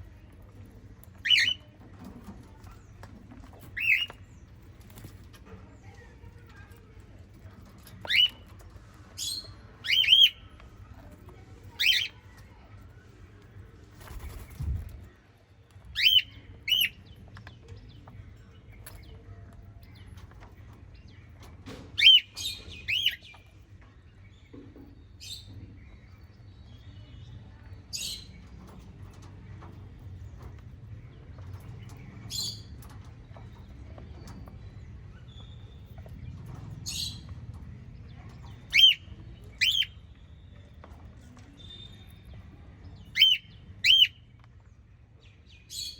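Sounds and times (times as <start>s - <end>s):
parrots chirping: 38.7s - 40.0s.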